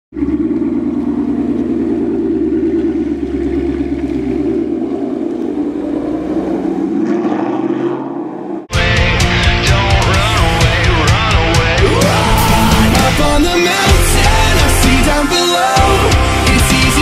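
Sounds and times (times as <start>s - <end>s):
car engine deep exhaust rumble: 0.1s - 7.1s.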